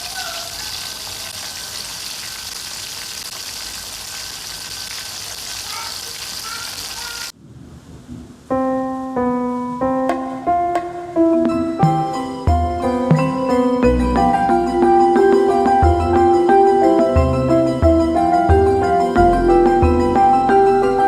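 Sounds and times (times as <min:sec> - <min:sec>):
solo piano music: 0:08.5 - 0:21.0.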